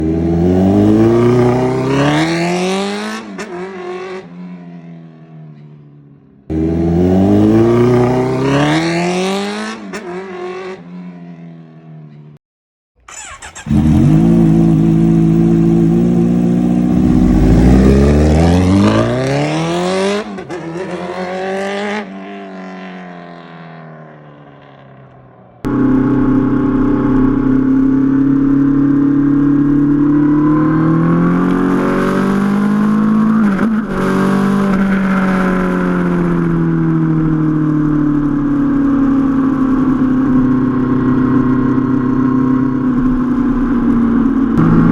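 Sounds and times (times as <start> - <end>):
motorcycle engine revving: 0.0 - 12.2, 13.0 - 44.9.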